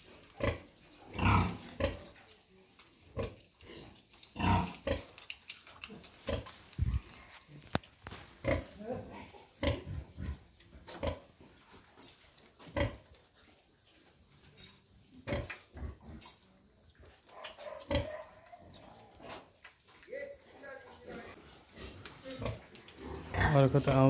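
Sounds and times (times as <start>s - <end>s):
pigs grunting: 0.0s - 2.2s, 3.1s - 7.3s, 8.4s - 11.5s, 12.6s - 13.0s, 17.3s - 19.6s, 20.3s - 24.0s.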